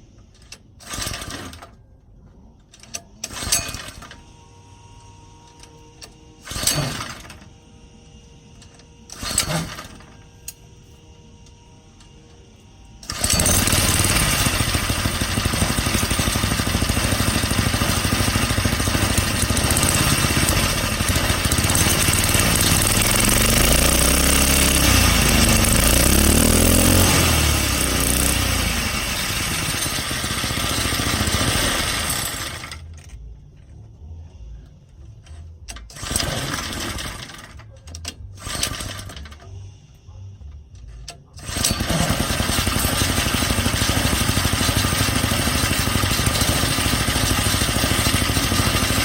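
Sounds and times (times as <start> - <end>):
small engine running and revving: 6.4 - 8.1, 12.8 - 32.8, 35.9 - 37.6, 41.4 - 49.0
engine sputters: 13.0 - 37.6.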